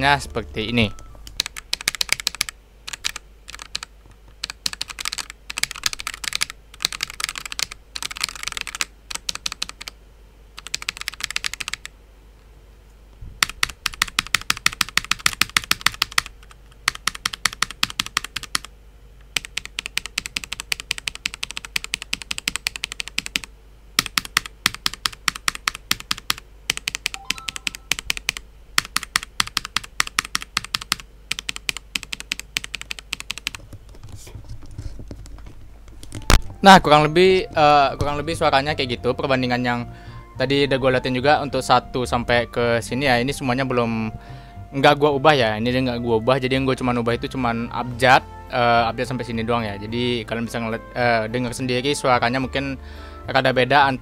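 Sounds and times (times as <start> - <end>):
mechanical keyboard key clacks: 1.3 - 9.9, 10.6 - 11.9, 13.4 - 18.7, 19.3 - 34.2.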